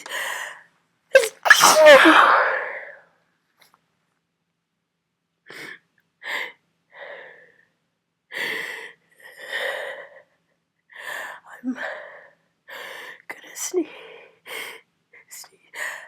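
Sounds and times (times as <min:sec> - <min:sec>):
person sneezing: 0:01.2 - 0:02.9
breathy gasping inhalations: 0:01.2 - 0:03.0.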